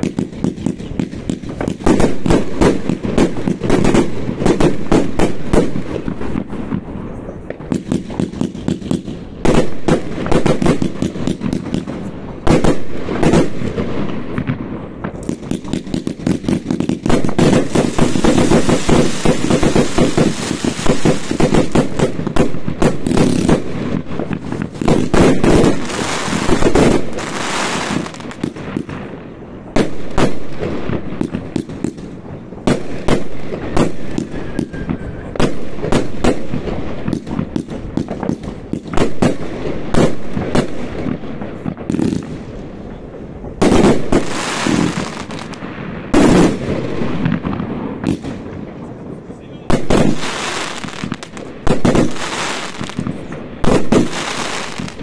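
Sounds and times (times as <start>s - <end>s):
fireworks bangs and crackling: 0.0s - 55.0s
firework whistle sliding down: 34.1s - 35.4s.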